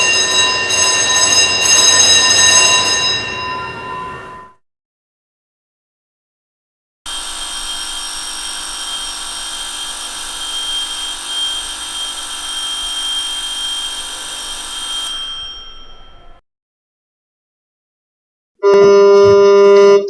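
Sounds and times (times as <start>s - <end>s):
electric school bell ringing: 0.0s - 4.6s, 7.1s - 16.4s.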